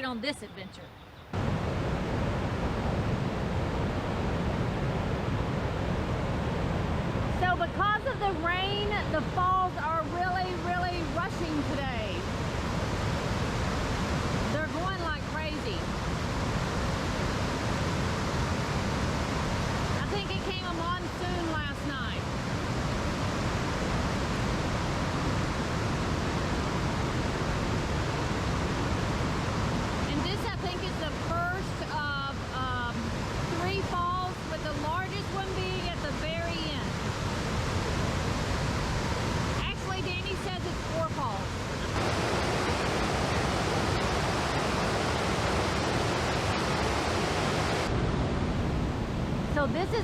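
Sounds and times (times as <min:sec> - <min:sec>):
waterfall rushing: 0:33.0 - 0:49.4.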